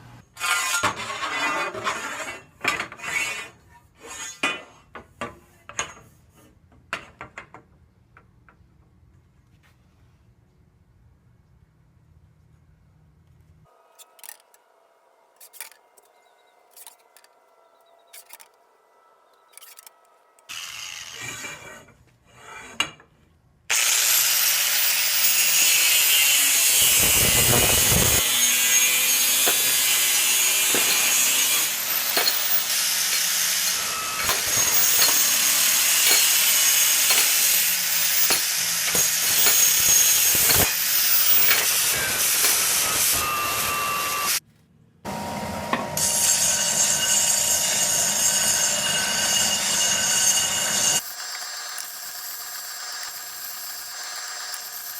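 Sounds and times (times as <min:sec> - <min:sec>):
small clicks and handling noises: 0:13.2 - 0:14.6, 0:19.4 - 0:20.5
power tool cutting wood: 0:20.4 - 0:21.9, 0:23.7 - 0:44.4, 0:45.1 - 0:54.9.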